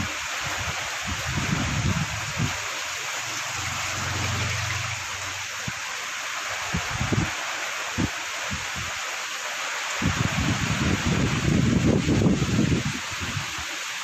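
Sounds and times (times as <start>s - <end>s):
wind gusts buffeting microphone: 0.0s - 2.6s, 6.6s - 7.4s, 10.0s - 13.7s
heavy rain falling: 0.0s - 14.0s.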